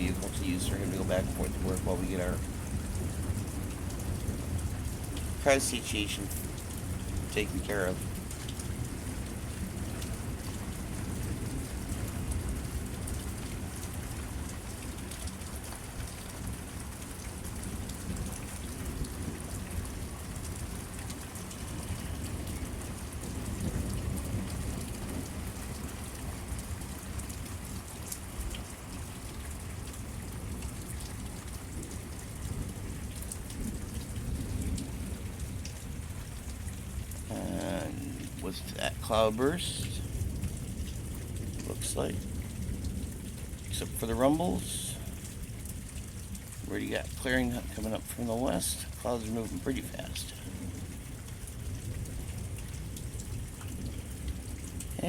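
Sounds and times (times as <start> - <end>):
low rumbling thunder: 0.0 - 5.7, 21.6 - 26.8, 31.6 - 38.4, 39.8 - 43.9
steady rain falling: 0.0 - 55.0.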